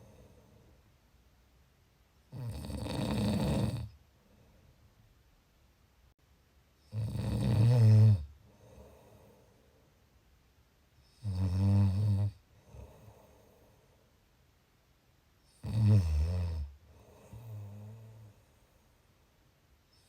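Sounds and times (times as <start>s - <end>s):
soft breath: 0.0s - 1.0s, 4.1s - 5.0s, 8.4s - 10.2s, 12.5s - 14.4s, 16.8s - 19.1s
loud snores: 2.3s - 4.0s, 6.9s - 9.2s, 11.1s - 13.2s, 15.5s - 18.3s.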